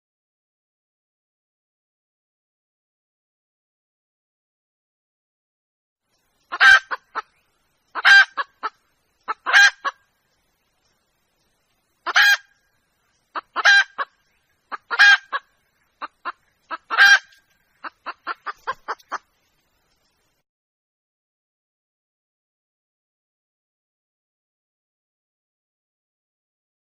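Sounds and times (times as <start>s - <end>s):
hen clucking: 6.5s - 10.0s, 12.0s - 12.6s, 13.3s - 19.4s.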